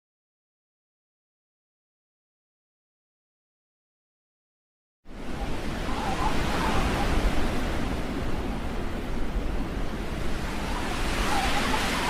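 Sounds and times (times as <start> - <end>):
wind rumble on microphone: 5.1 - 12.0
wind rushing in snowstorm: 5.1 - 12.0.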